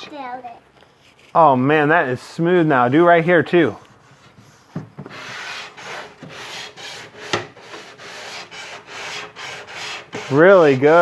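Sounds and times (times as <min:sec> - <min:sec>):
sandpaper rubbing on wood: 0:02.8 - 0:11.0.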